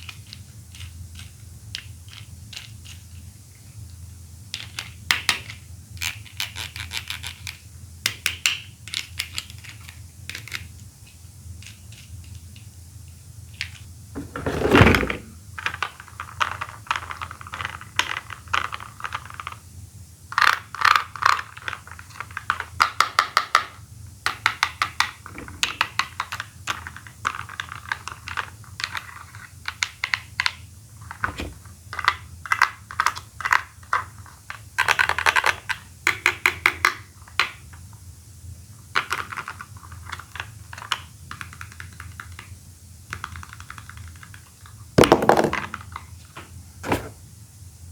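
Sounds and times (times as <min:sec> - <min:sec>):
loud thump: 0:31.3 - 0:31.6, 0:45.0 - 0:45.8, 0:46.8 - 0:47.2.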